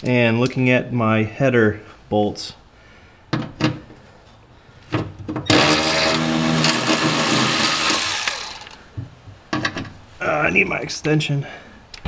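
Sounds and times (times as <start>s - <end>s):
cordless ratchet motor running: 5.5s - 8.8s.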